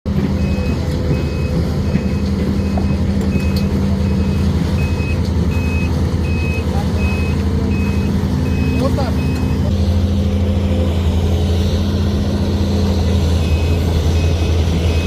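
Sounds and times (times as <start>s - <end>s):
diesel engine running: 0.0s - 15.0s
high beeping travel alarm: 2.6s - 9.7s.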